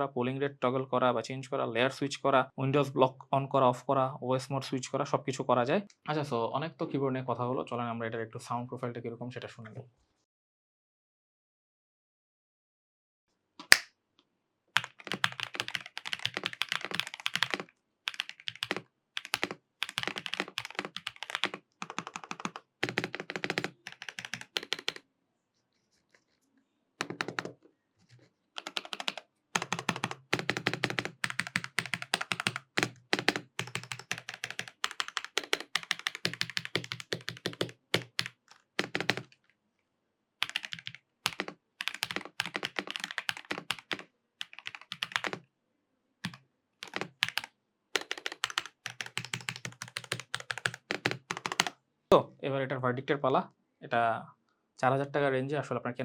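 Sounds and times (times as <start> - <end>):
fast typing on mechanical keyboard: 14.8 - 25.0, 27.0 - 27.5, 28.2 - 39.4, 40.4 - 45.4, 46.2 - 51.7.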